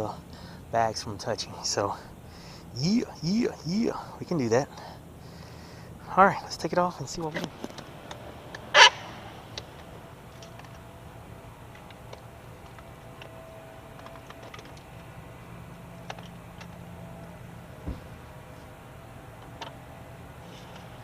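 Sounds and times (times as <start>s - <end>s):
hands clicking and tapping parts: 11.7s - 15.1s
dull knock: 17.8s - 18.1s.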